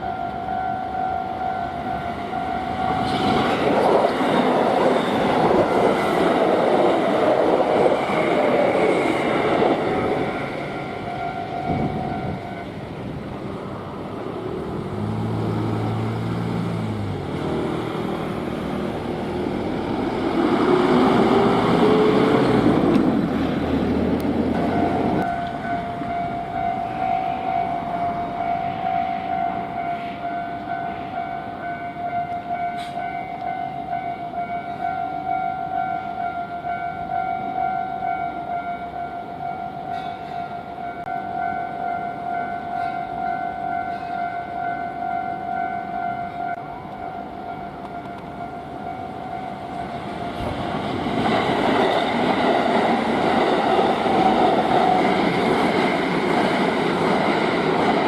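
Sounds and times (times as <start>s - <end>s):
train wheels on rails: 0.0s - 38.6s, 39.4s - 58.0s
level crossing bell clanging: 24.6s - 50.0s.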